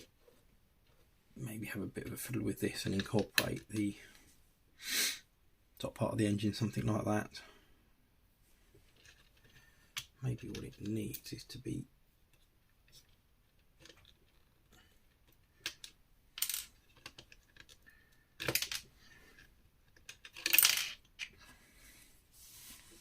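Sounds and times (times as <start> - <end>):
plastic bricks clicking and clattering: 12.3 - 21.4.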